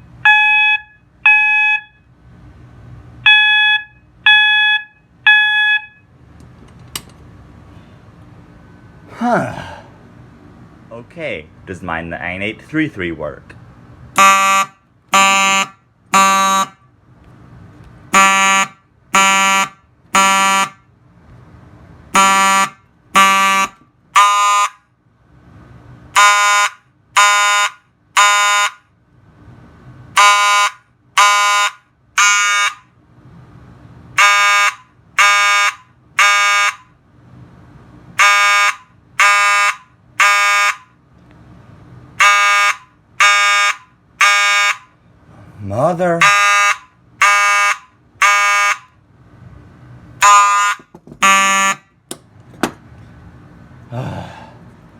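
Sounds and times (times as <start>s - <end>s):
buzzy fire alarm horn: 0.2s - 2.1s, 3.2s - 6.1s, 14.2s - 16.8s, 18.1s - 20.9s, 22.1s - 24.9s, 26.1s - 28.9s, 30.2s - 32.9s, 34.2s - 36.9s, 38.2s - 41.0s, 42.2s - 45.0s, 46.2s - 49.0s, 50.2s - 52.0s.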